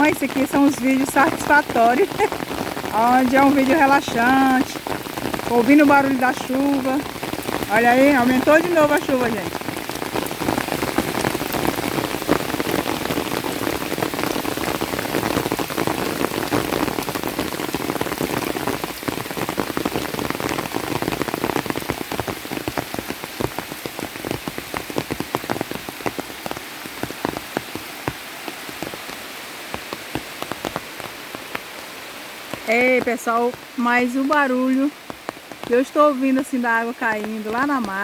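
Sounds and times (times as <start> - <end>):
heavy rain pouring: 0.0 - 38.0
raindrops striking close by: 0.0 - 38.0.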